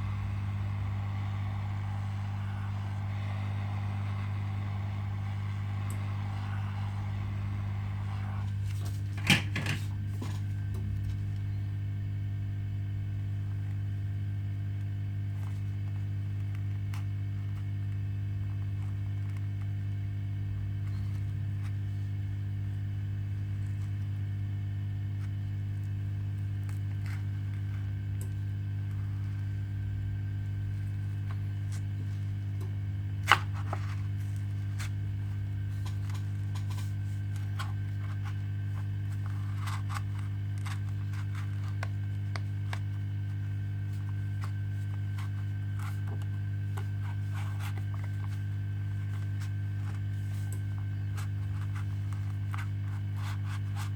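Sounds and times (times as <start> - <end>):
blowing hiss: 0.0 - 8.5
low electrical hum: 0.0 - 53.9.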